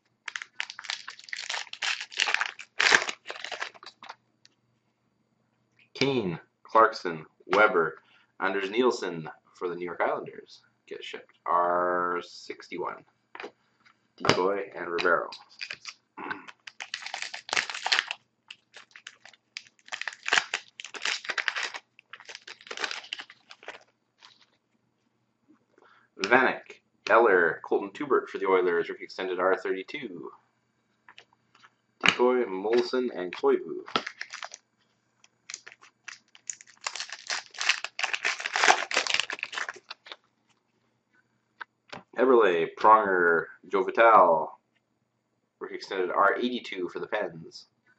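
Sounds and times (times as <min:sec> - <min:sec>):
wrapper tearing and crinkling: 0:00.2 - 0:04.2, 0:15.4 - 0:24.5, 0:33.9 - 0:34.6, 0:35.4 - 0:40.2.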